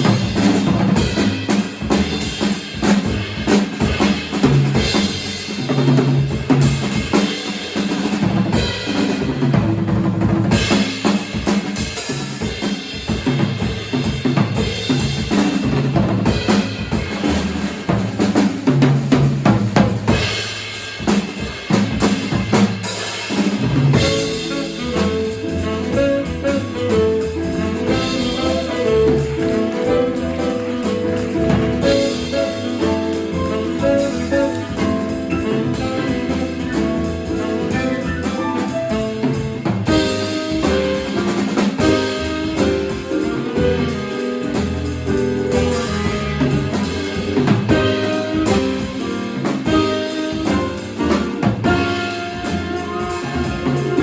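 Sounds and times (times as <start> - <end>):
jazz drum kit solo: 0.0 - 54.0
bass line: 23.3 - 54.0.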